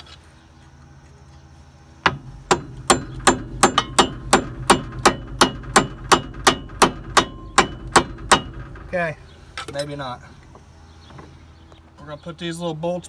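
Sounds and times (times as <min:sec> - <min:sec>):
hammer striking steel pin: 0:02.1 - 0:10.7.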